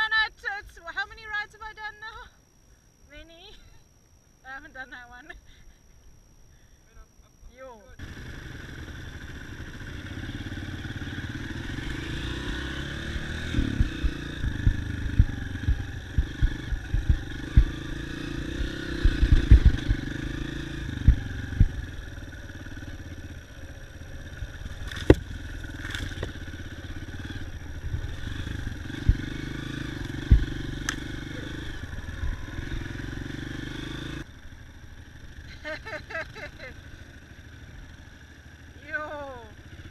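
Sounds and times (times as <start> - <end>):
dirt bike engine running: 8.0 - 39.9
sharp knocks and thumps: 24.8 - 26.4, 30.2 - 30.5.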